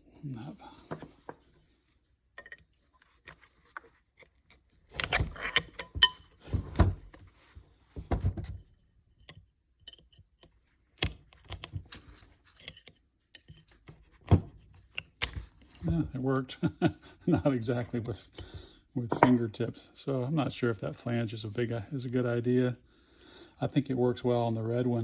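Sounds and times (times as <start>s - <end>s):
plastic parts clicking and knocking: 9.2s - 16.1s.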